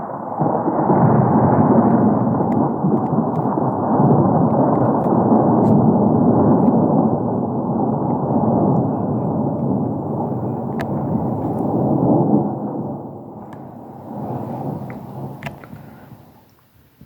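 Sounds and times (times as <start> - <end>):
rolling thunder rumble: 0.0 - 17.0
faint crackling clicks: 1.8 - 5.8, 9.5 - 11.8, 13.4 - 16.7.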